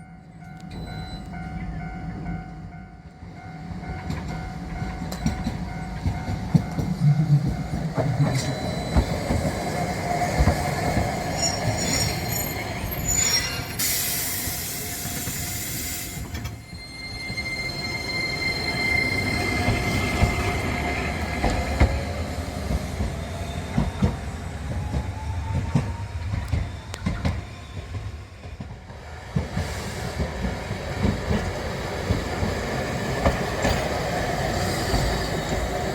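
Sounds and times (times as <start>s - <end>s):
streetcar running on rails: 0.0s - 35.9s
wheel squeal: 8.2s - 9.9s, 10.5s - 21.2s
hiss: 13.3s - 16.5s.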